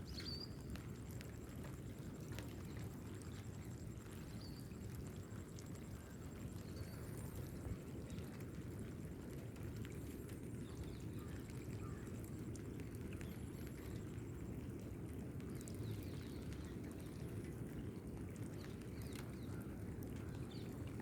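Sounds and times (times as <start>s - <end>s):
steady rain falling: 0.0s - 21.0s.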